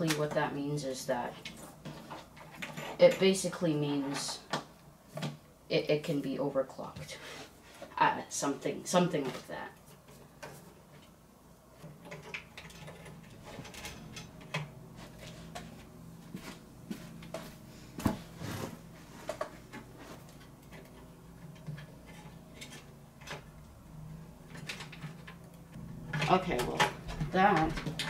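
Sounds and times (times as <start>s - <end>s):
cables and plastic parts rattling: 11.8s - 23.8s, 24.4s - 28.0s.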